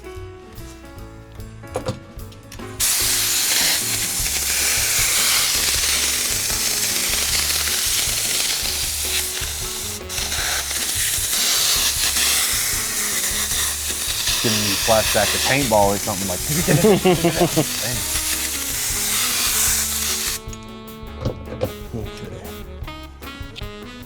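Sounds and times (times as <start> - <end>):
spray adhesive hissing from nozzle: 2.8 - 20.5.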